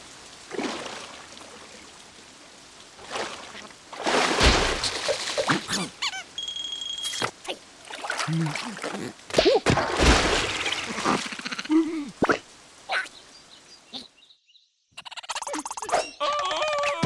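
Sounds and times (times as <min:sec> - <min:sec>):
squeaky cartoon vocalizations: 0:05.4 - 0:07.6, 0:10.8 - 0:13.1, 0:15.0 - 0:17.0
high whistle tone: 0:06.4 - 0:07.2.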